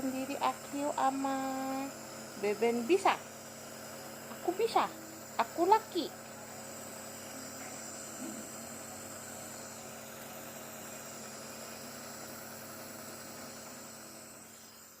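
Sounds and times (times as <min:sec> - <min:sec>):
nebulizer compressor humming: 0:00.0 - 0:15.0.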